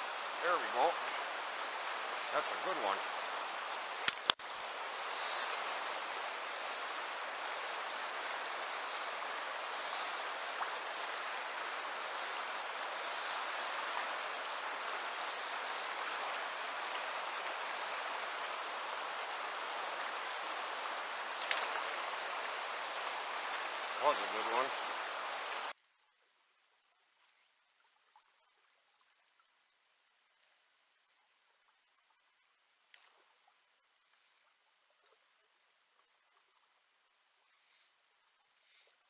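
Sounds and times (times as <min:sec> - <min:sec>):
river current rushing: 0:00.0 - 0:25.7
sharp click: 0:04.0 - 0:04.4.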